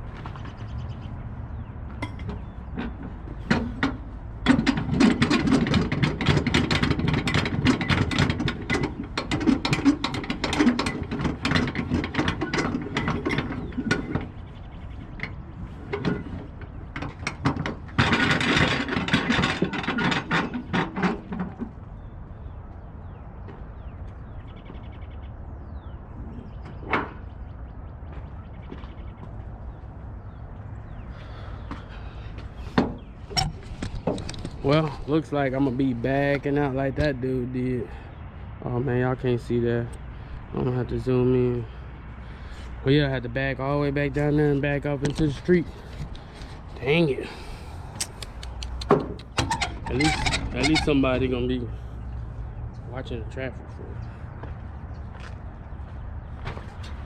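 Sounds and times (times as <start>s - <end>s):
sharp click: 48.0s - 49.4s.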